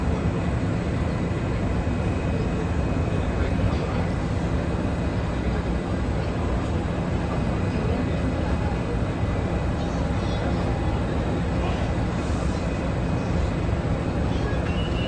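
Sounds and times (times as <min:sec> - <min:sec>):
metro train rumble and hum: 0:00.0 - 0:15.0.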